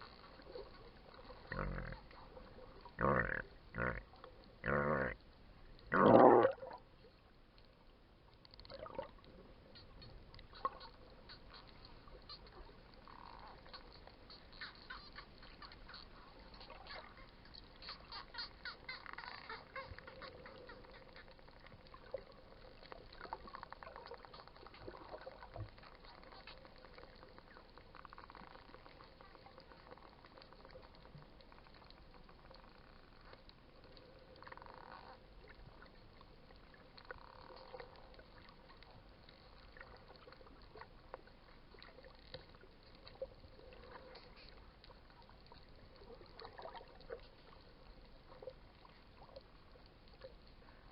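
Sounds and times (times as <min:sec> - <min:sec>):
low water hiss: 0:00.0 - 0:50.9
dolphin clicks underwater: 0:08.6 - 0:36.0
dolphin buzzy squawks: 0:09.8 - 0:21.5.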